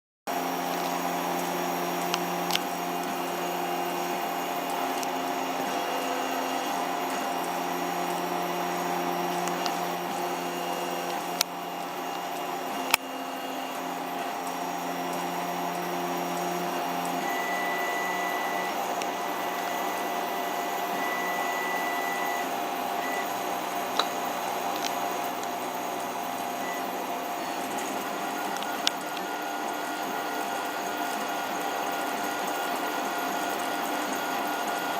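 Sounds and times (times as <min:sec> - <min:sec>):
stepper motors whining: 0:00.3 - 0:34.9.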